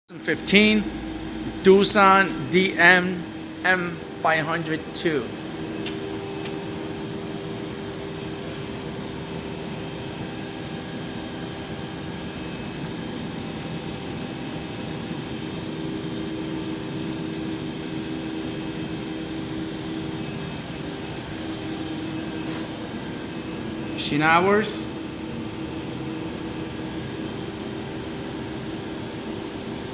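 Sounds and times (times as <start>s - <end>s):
machinery running: 0.2s - 6.9s
steady low tones: 0.2s - 8.2s.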